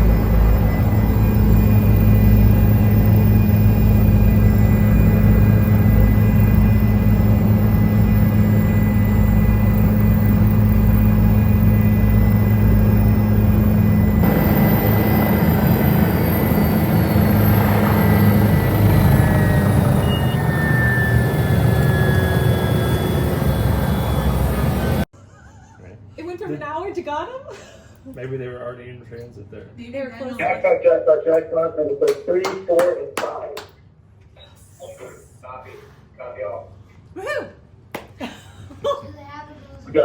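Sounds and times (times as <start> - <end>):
helicopter turbine and rotor drone: 0.0 - 25.1
high whine falling in pitch: 0.0 - 25.1.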